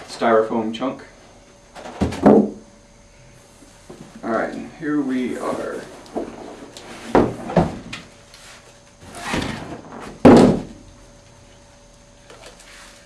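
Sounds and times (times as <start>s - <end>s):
knocks on a box: 2.0s - 2.6s
loud thump: 10.2s - 10.8s.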